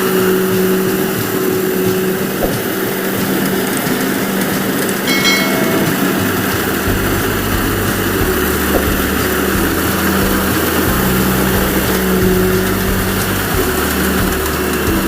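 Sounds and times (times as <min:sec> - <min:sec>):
combine harvester engine drone: 0:04.5 - 0:15.0.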